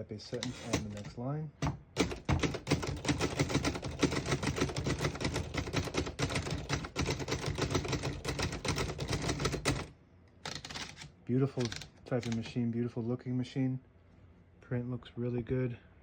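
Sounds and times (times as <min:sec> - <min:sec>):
muffled typewriter keystrokes: 0:00.3 - 0:12.5.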